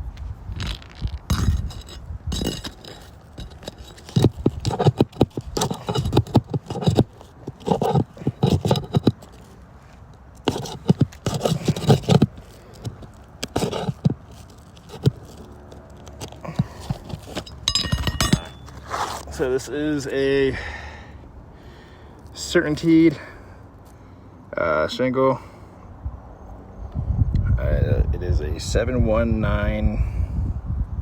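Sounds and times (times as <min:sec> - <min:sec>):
shingle scraping: 0:00.6 - 0:19.4
small clinks: 0:10.5 - 0:18.8.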